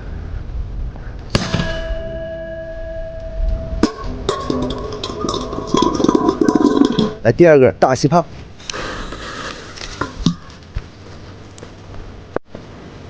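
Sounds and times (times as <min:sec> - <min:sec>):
firecracker bang: 0:01.3 - 0:04.6
metal pot crashing and clattering: 0:01.4 - 0:07.2
metal pot ringing: 0:01.4 - 0:07.2.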